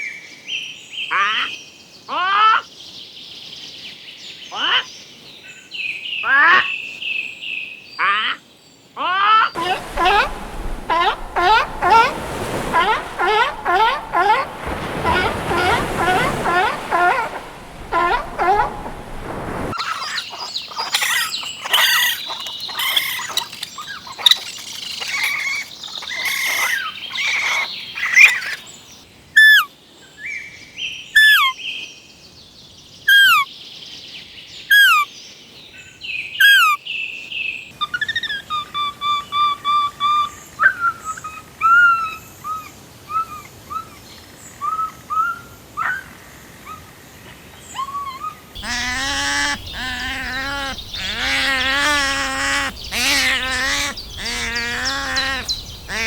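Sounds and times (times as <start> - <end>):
bird hooked call: 9.6 - 19.8, 48.6 - 56.0
birds chirping: 9.6 - 28.9, 48.6 - 56.0
bird short evenly spaced notes: 48.6 - 56.0.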